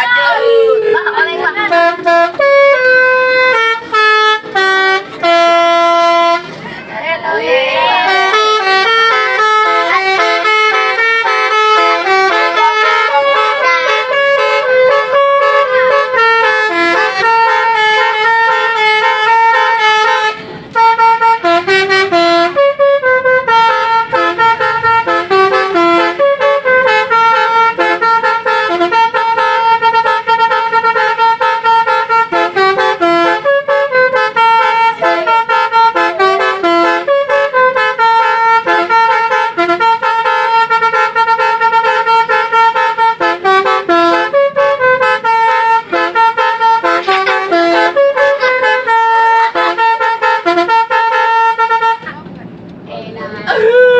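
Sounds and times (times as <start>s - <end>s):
musical air horn playing a tune: 1.5s - 6.6s, 7.9s - 52.1s.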